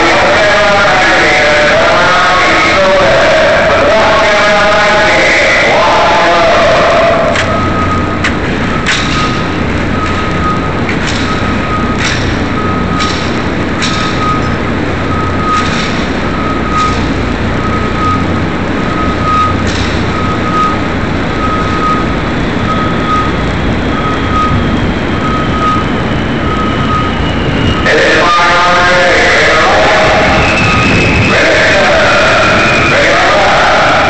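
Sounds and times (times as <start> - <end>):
heavy low rumble: 0.0 - 34.0
electronic beeper high note: 6.8 - 8.2, 21.4 - 33.2.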